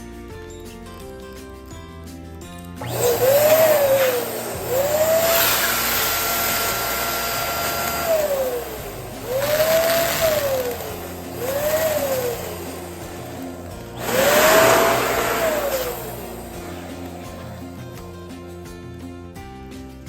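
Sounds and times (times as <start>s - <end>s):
electric balloon pump whine: 2.7s - 18.3s
rush of air: 14.0s - 17.4s.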